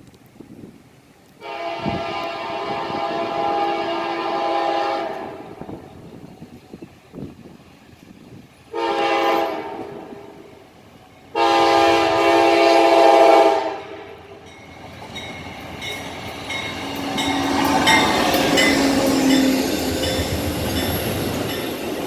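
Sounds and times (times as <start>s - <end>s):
train horn blasts: 1.4s - 5.9s, 8.7s - 10.6s, 11.3s - 14.3s
train wheels clickety-clack: 14.5s - 22.0s.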